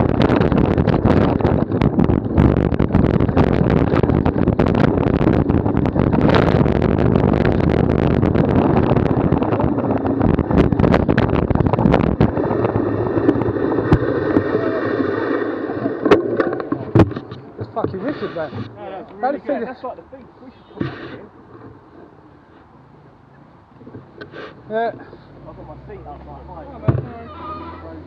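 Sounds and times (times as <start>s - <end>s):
bike knocking and rattling: 0.0s - 14.6s, 15.9s - 18.8s
low rumble: 0.0s - 17.2s
wind rushing over microphone: 0.0s - 18.8s.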